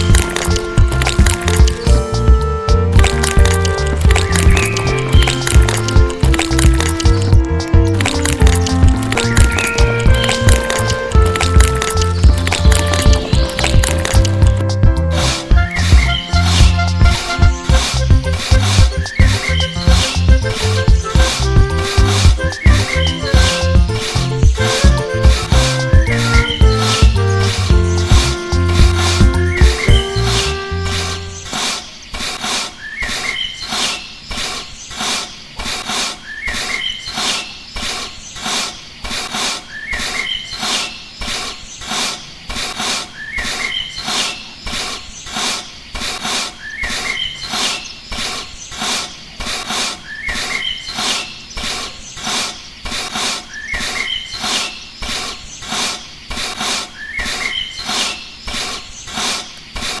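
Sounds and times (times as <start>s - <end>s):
quick clicks: 8.0s - 14.6s.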